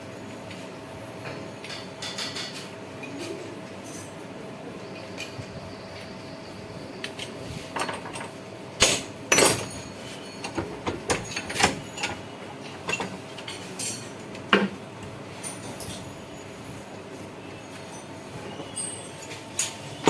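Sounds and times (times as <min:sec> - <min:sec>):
metal tools clanking: 0:09.3 - 0:14.2, 0:17.7 - 0:20.0.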